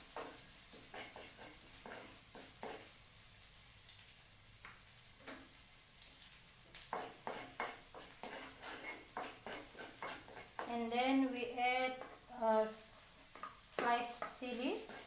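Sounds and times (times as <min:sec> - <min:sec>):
spatula scraping a pan: 0:00.0 - 0:03.0, 0:06.8 - 0:15.0
onion and garlic sizzling in oil: 0:00.0 - 0:15.0.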